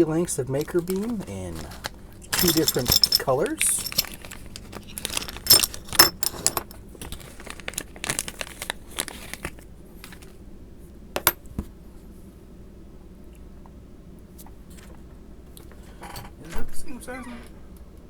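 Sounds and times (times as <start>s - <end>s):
aluminium bars clinking together: 2.3s - 6.8s.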